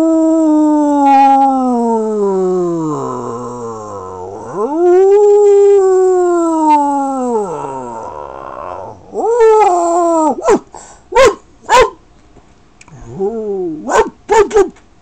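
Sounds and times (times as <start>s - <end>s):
dog howling: 0.0s - 10.6s
dog yelping: 10.4s - 10.6s, 11.2s - 12.0s.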